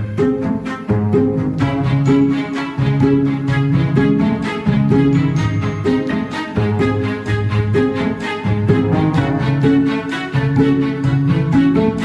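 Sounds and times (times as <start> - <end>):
bowed strings playing short chords: 7.8 - 11.4.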